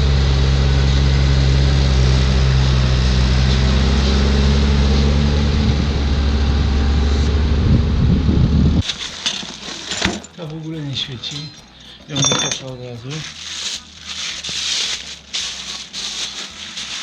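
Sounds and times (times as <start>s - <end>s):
tractor engine idling: 0.0s - 8.0s, 8.8s - 17.0s.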